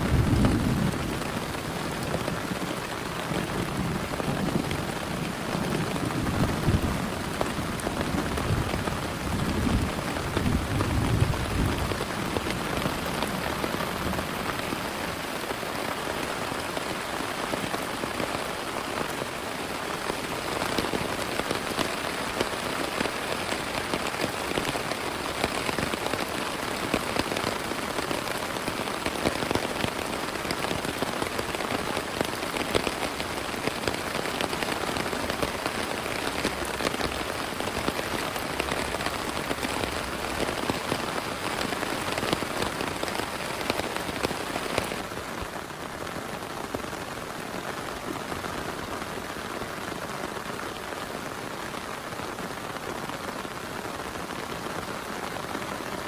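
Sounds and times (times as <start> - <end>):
raindrop hits: 0.0 - 18.6
heavy rain: 0.0 - 56.0.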